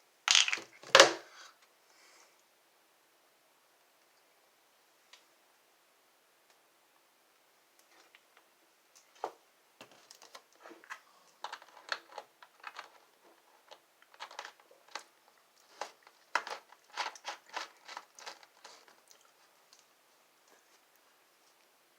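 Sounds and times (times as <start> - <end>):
plastic crinkling: 0.3 - 1.0, 9.9 - 19.8.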